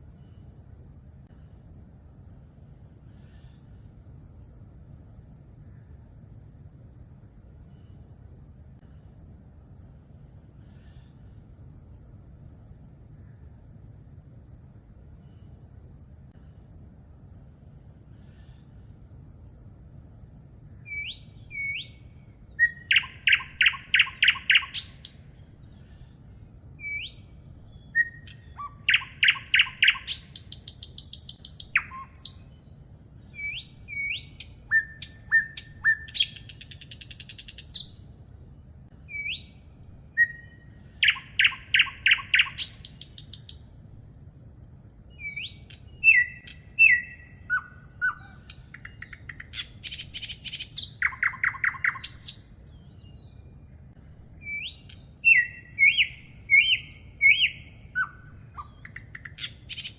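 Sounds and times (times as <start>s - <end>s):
songbird singing with trill: 20.8s - 38.1s, 38.9s - 43.7s, 44.5s - 59.9s.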